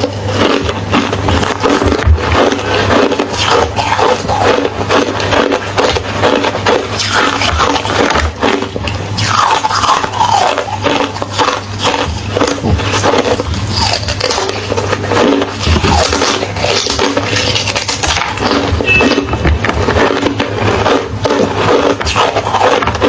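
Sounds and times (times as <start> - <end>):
person crunching ice: 0.0 - 23.0.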